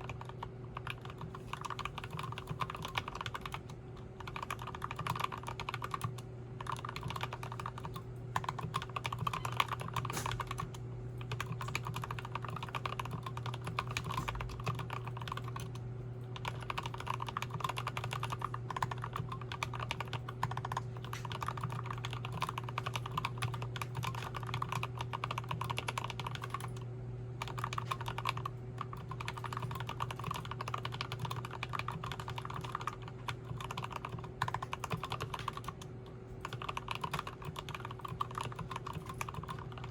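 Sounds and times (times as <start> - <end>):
fast mechanical keyboard typing: 0.0 - 39.9.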